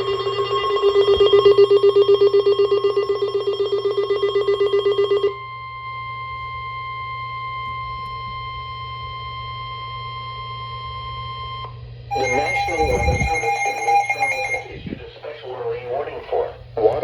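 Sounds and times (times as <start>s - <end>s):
steady warning tone: 0.0s - 5.4s, 12.1s - 15.0s
rapidly pulsing buzzer alert: 12.1s - 14.7s.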